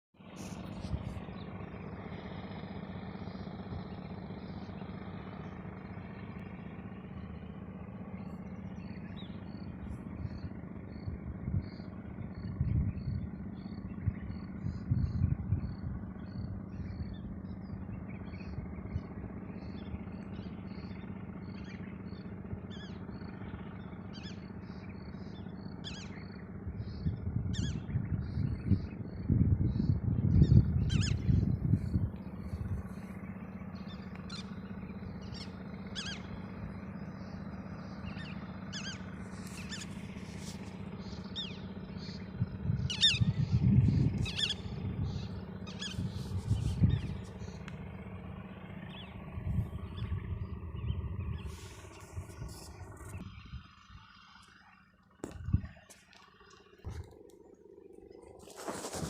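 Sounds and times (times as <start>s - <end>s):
low motor drone: 0.2s - 59.0s
birds chirping: 0.3s - 59.0s.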